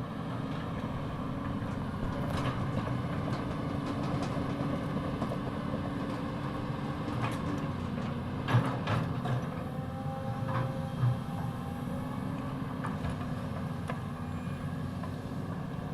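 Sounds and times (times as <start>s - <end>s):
excavator diesel engine running: 0.0s - 15.9s.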